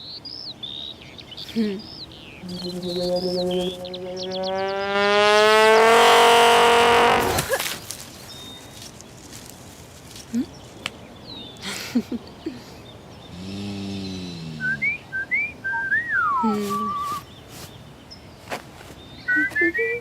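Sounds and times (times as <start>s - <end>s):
rising chirps: 2.2s - 7.5s, 14.6s - 17.3s
whistled notes: 2.4s - 5.0s, 14.6s - 17.3s, 19.3s - 20.0s
low falling tone: 2.4s - 7.3s
wavering held note: 2.4s - 7.4s
sliding drop in pitch: 2.4s - 7.6s.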